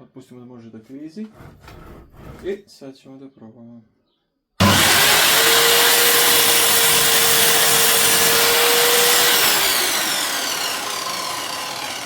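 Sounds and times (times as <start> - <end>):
mitre saw motor whine: 4.6 - 12.0.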